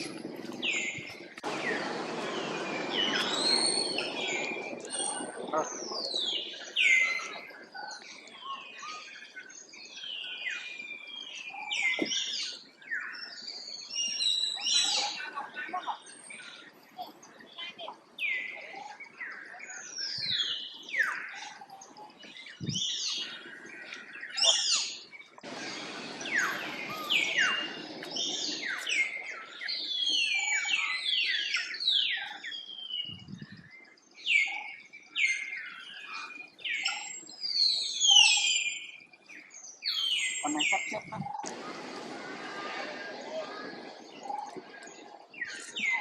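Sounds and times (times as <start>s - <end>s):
high-pitched chirping calls: 22.6s - 33.4s.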